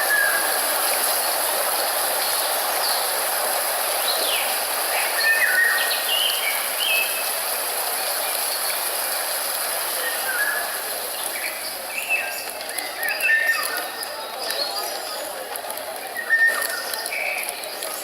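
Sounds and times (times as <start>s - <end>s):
steady hiss: 0.0s - 12.6s.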